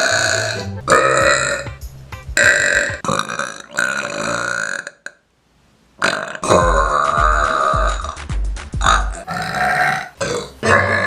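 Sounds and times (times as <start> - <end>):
woman burping: 0.0 - 1.6, 6.0 - 8.2, 8.8 - 11.0.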